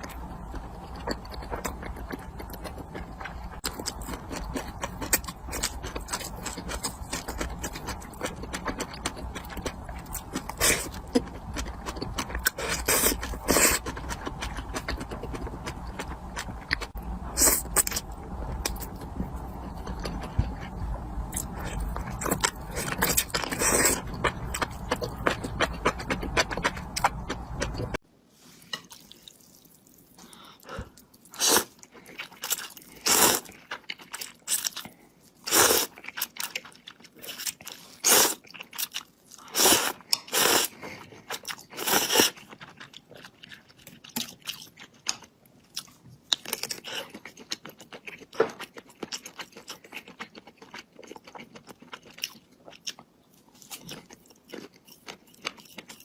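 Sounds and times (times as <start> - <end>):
chewing crunchy food: 0.0 - 28.0, 28.8 - 56.0.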